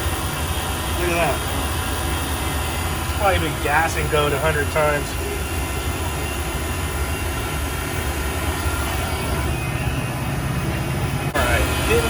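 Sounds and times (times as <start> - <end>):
vacuum pump humming: 0.0 - 12.0.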